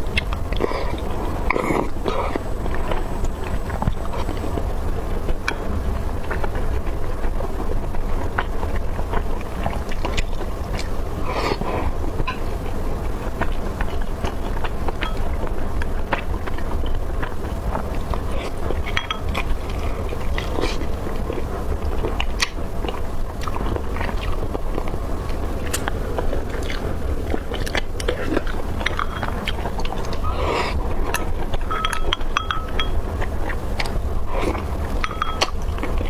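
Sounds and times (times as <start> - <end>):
chewing and crunching: 0.0 - 36.0
steady low hum: 0.0 - 36.0.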